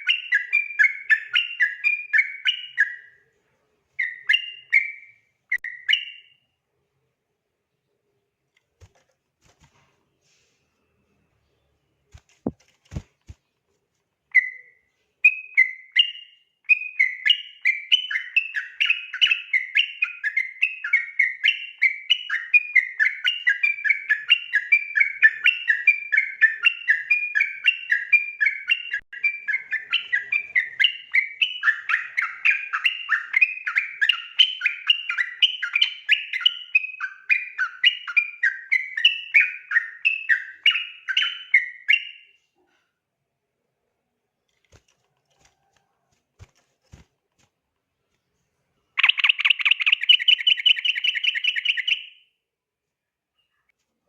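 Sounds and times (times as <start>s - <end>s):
bird singing whistled notes: 0.0s - 3.2s, 4.0s - 6.5s, 14.3s - 42.4s, 49.0s - 52.3s.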